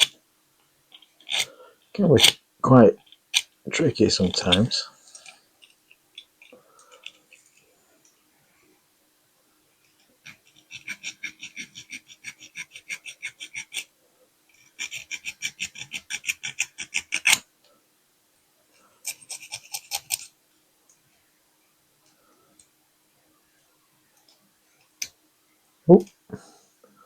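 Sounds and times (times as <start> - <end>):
hand file rasping on steel: 0.9 - 1.6, 10.2 - 13.9, 14.6 - 17.4.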